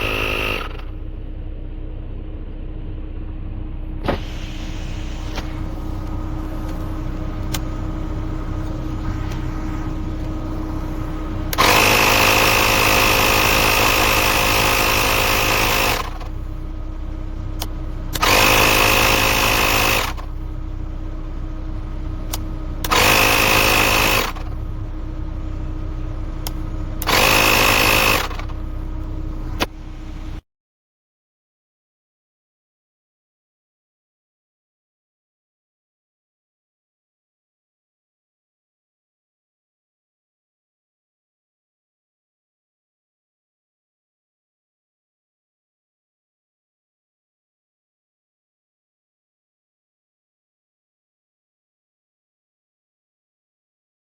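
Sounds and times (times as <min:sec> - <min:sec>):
tire inflator compressor whining: 0:00.0 - 0:01.7, 0:03.9 - 0:30.4
steady mechanical hum: 0:00.0 - 0:30.4.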